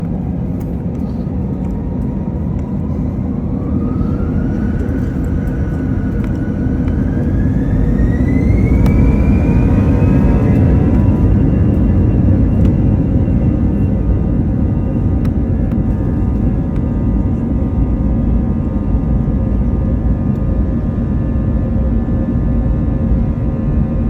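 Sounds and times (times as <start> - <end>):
jet engines spooling up: 0.0 - 17.7.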